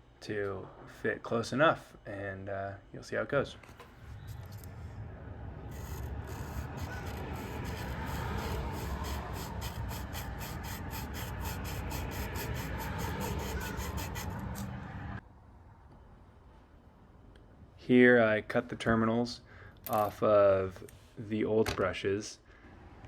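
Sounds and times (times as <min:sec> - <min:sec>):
rhythmic sanding scrape: 0:03.8 - 0:15.2.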